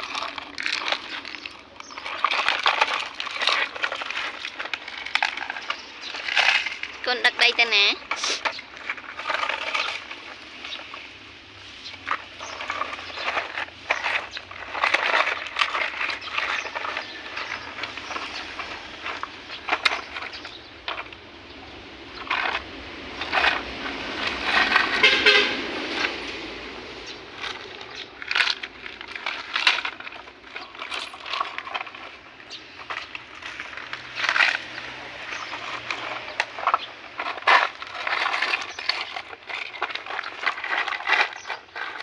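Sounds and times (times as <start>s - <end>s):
plastic toy cars clattering: 0.0s - 42.0s
toy horn tooting: 24.9s - 25.7s.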